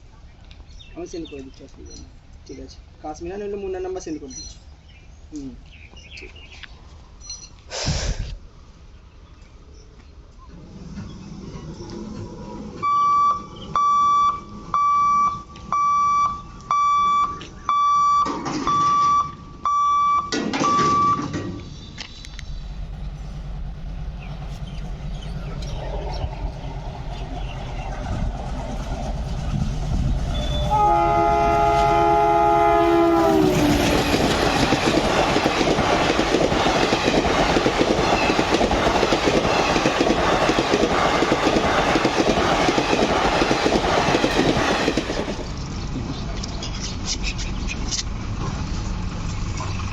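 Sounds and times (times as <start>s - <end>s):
train approaching rumble: 8.4s - 17.7s, 21.5s - 49.9s
train horn: 30.3s - 34.2s
train wheels clattering on rails: 33.3s - 49.8s.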